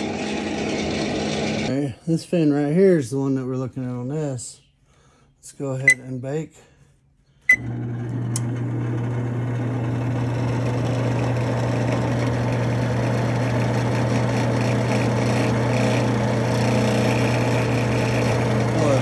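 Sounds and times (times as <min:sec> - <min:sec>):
oven fan motor humming and whirring: 0:07.5 - 0:19.0.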